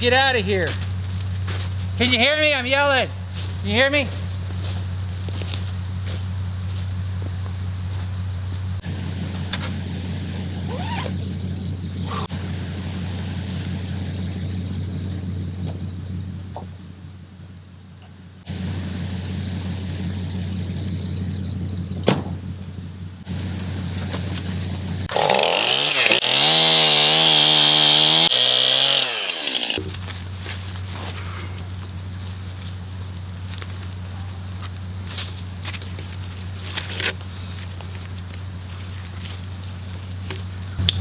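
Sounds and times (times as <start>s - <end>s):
low engine drone: 0.0s - 25.1s, 29.7s - 41.0s
chainsaw cutting wood: 24.0s - 30.6s.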